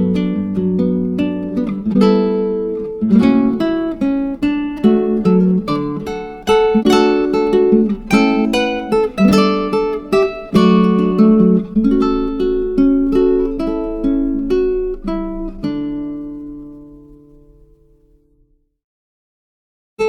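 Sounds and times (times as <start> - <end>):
acoustic guitar playing: 0.0 - 18.6.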